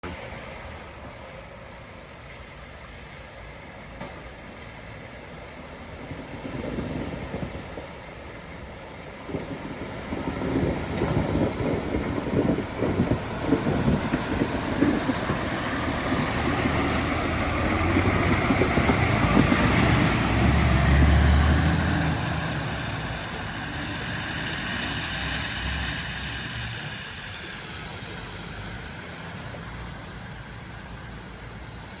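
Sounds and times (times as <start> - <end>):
water rushing and splashing: 8.5 - 32.0
truck engine humming under load: 10.4 - 32.0.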